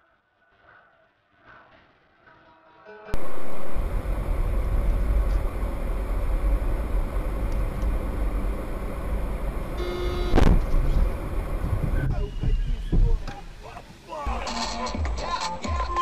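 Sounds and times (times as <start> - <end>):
car horn blaring: 3.2 - 12.1
car road and engine rumble: 3.2 - 12.2.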